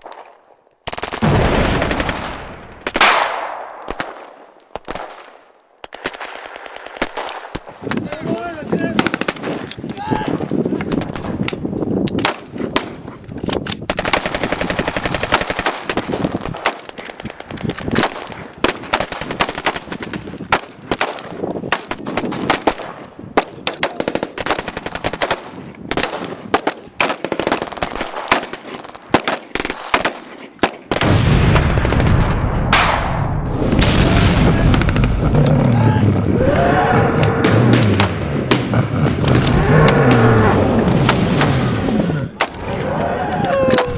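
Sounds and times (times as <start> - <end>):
single gunshots: 1.2 - 7.7, 20.5 - 35.4, 37.3 - 42.7
machine-gun bursts: 13.9 - 20.0
loud low explosion boom: 31.1 - 42.7.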